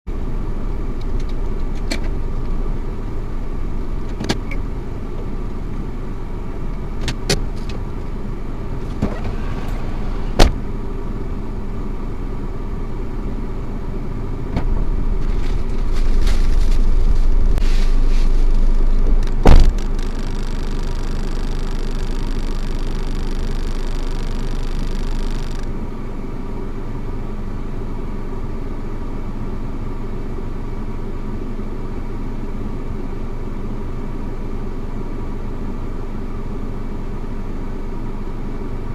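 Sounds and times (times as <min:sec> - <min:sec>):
car engine and road noise: 0:00.1 - 0:38.9
loud thump: 0:08.9 - 0:10.7, 0:19.4 - 0:20.0.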